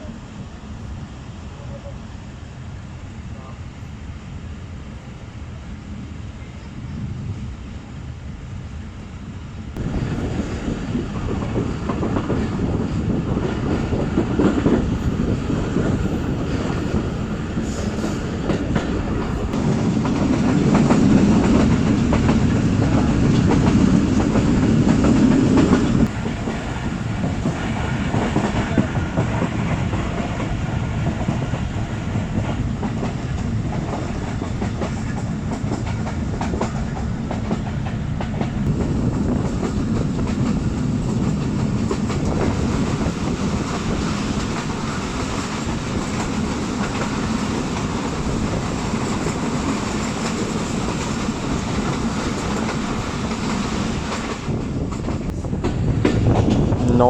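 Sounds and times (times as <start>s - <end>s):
train wheels clattering: 9.8s - 57.0s.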